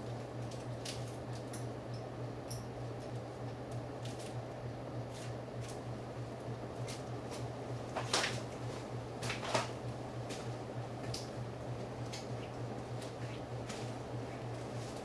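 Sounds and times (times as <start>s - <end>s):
ceiling fan motor hum: 0.0s - 15.0s.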